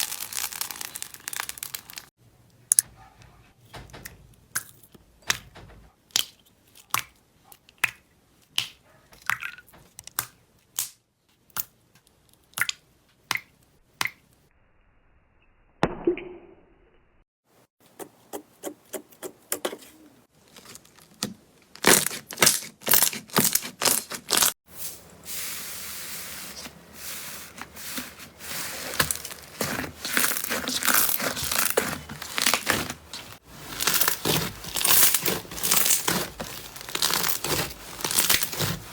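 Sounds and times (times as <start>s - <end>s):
slime clicking and crackling: 0.0s - 2.1s, 29.0s - 38.9s.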